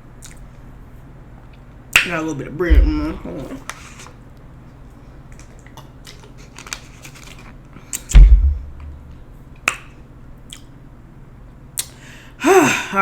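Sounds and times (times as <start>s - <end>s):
loud low thump: 2.7s - 3.3s, 8.1s - 9.2s.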